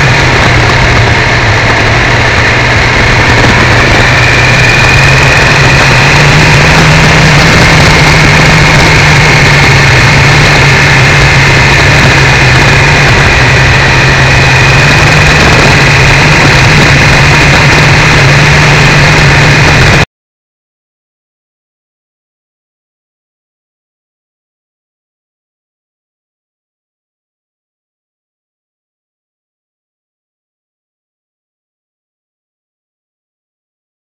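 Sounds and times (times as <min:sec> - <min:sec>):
motorcycle engine running: 0:00.0 - 0:20.1.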